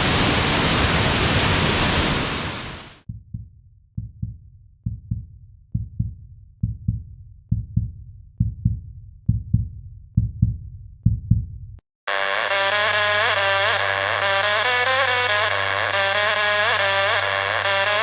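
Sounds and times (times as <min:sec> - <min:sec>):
heartbeat thumps: 0:03.1 - 0:11.7
music with steady tone: 0:12.1 - 0:18.0.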